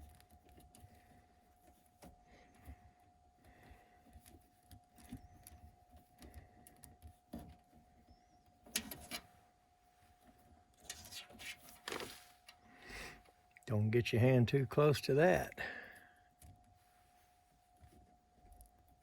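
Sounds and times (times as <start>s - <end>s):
faint high-pitched hum: 0.0s - 19.0s.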